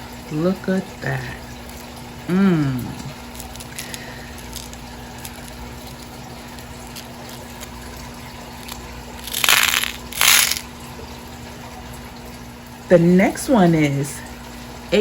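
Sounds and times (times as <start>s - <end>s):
steady background hum: 0.0s - 15.0s
plastic packaging crinkling: 3.2s - 10.8s.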